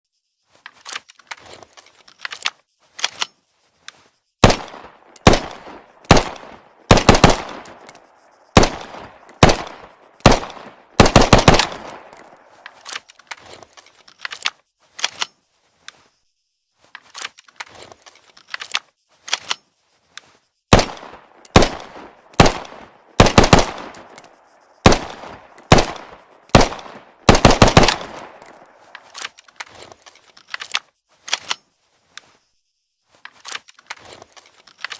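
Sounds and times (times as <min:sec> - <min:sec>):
pistol gunshots with echo: 0:04.4 - 0:07.8, 0:08.5 - 0:12.4, 0:20.7 - 0:24.2, 0:24.8 - 0:28.7.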